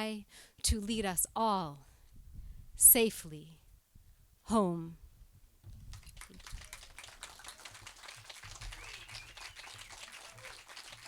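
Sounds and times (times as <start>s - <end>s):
audience applauding: 5.9s - 11.0s.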